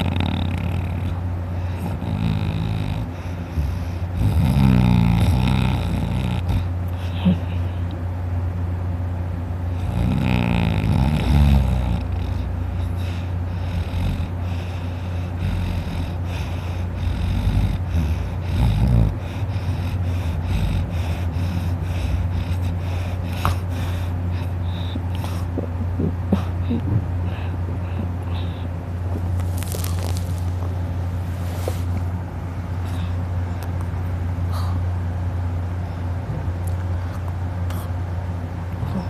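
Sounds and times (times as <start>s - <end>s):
man snoring: 0.0s - 7.4s, 9.8s - 25.4s
steady low hum: 0.0s - 39.0s.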